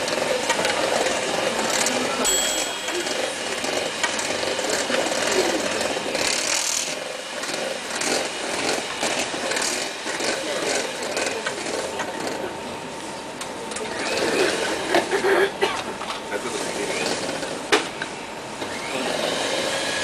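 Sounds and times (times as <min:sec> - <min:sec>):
electric mixer running: 0:00.0 - 0:12.5, 0:13.8 - 0:15.1, 0:18.6 - 0:20.0.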